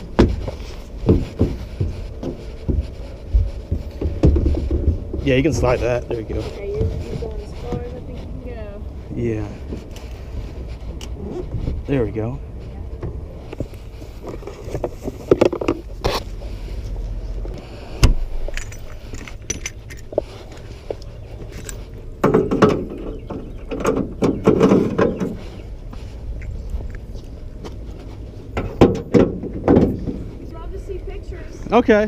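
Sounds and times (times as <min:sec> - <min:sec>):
low outdoor rumble: 0:00.0 - 0:32.0
knocks and rattles of gear: 0:18.1 - 0:25.6.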